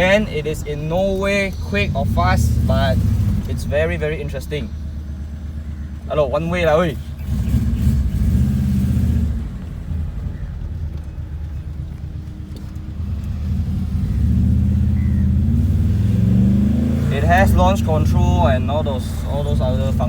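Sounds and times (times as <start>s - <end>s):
car engine running: 0.0s - 20.0s.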